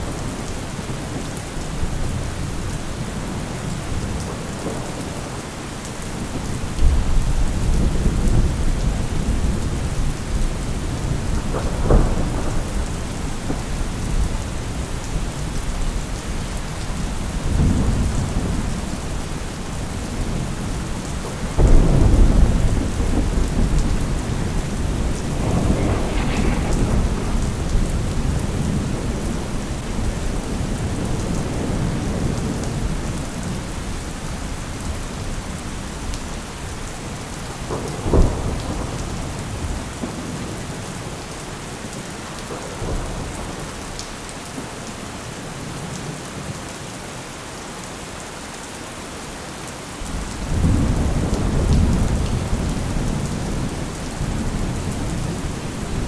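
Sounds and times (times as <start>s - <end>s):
steady rain: 0.0s - 56.0s
sharp thunder crack: 21.6s - 30.4s
thunder rumbling: 21.6s - 33.2s.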